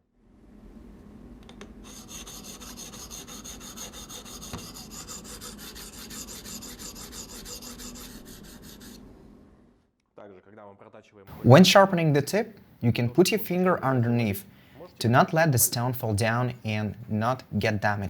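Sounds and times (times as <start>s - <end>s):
sharpening stone grinding on blade: 1.9s - 9.0s.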